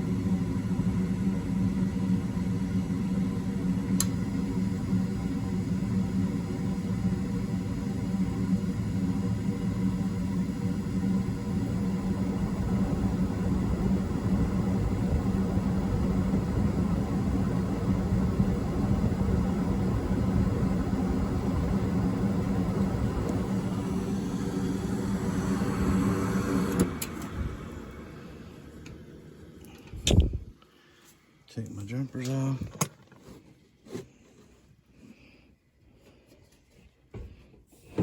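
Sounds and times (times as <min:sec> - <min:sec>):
furnace humming: 0:00.0 - 0:38.0
furnace shut-off click: 0:03.4 - 0:10.3, 0:11.0 - 0:27.8.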